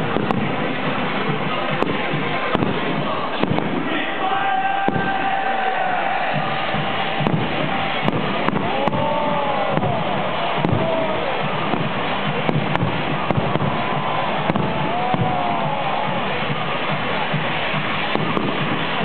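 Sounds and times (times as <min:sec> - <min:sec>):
fireworks cracking: 0:00.0 - 0:19.0
stadium crowd din: 0:00.0 - 0:19.0
whistling firework tones: 0:04.7 - 0:19.0.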